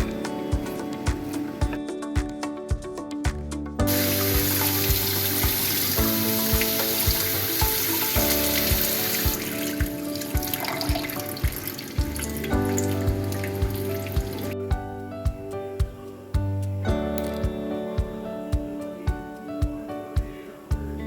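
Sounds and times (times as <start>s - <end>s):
background music with steady beat: 0.0s - 21.0s
loud steady hissing: 3.8s - 16.9s.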